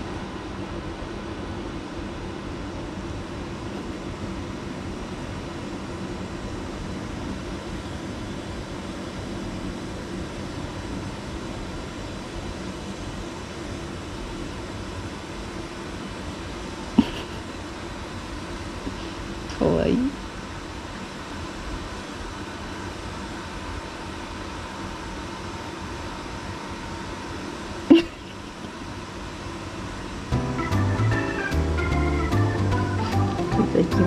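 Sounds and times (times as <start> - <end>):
machine hum: 25.6 - 34.0.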